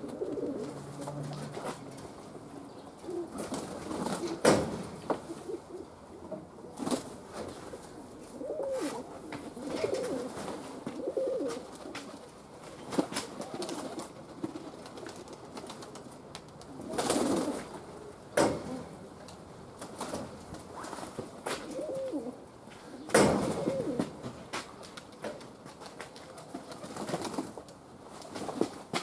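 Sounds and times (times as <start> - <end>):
pigeons cooing: 0.0 - 4.5, 5.2 - 6.8, 7.8 - 12.3, 16.8 - 19.0, 21.6 - 24.2.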